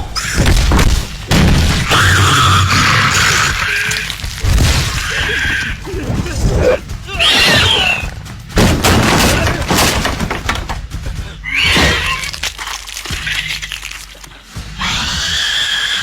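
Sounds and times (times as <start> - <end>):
action film music: 0.0 - 16.0
crashing and breaking impacts: 0.4 - 14.2
high arching cry: 5.0 - 8.1.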